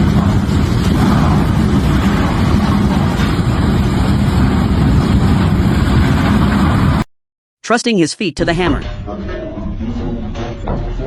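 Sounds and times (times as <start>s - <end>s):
heavy machinery rumbling: 0.0s - 7.1s.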